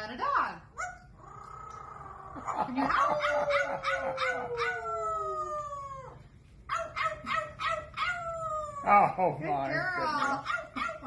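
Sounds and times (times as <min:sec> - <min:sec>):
parrot imitating dog howl: 0:00.8 - 0:09.0.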